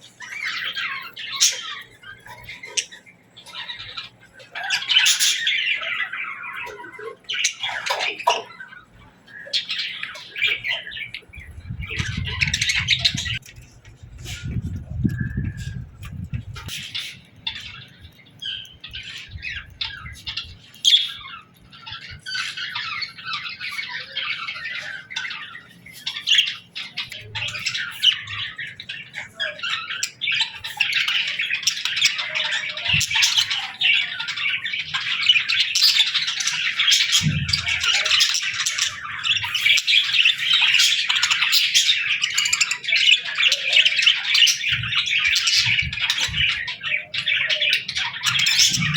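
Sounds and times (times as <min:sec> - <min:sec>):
budgerigars chirping and squawking: 0:00.0 - 0:48.9.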